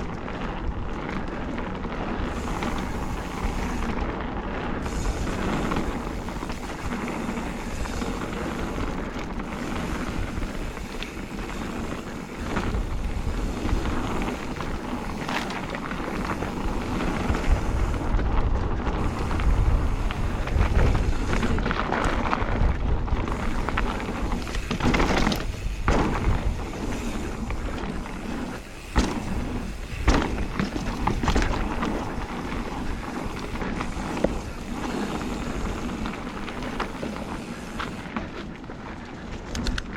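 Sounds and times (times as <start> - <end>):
bike rattling: 0.0 - 39.9
bike tyres crunching on dirt: 0.0 - 39.9
wind on microphone: 0.0 - 39.9.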